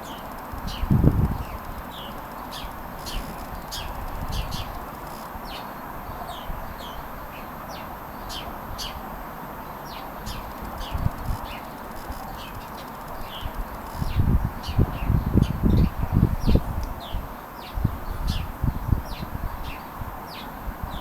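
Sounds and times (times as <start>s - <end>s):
wind buffeting microphone: 0.0s - 5.0s, 10.3s - 21.0s
songbirds chirping: 0.0s - 9.0s, 9.6s - 21.0s.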